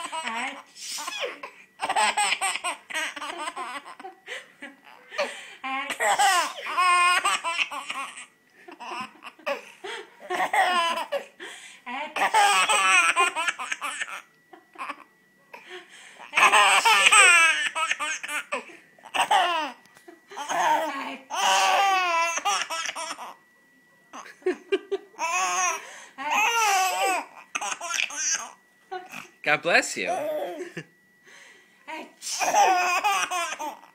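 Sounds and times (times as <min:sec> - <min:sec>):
baby laughing: 0:00.0 - 0:04.2, 0:05.9 - 0:09.7, 0:10.3 - 0:11.3, 0:12.2 - 0:14.2, 0:16.4 - 0:19.8, 0:20.4 - 0:23.3, 0:25.2 - 0:28.5, 0:32.4 - 0:33.9
woman fake sneezing: 0:00.7 - 0:01.4.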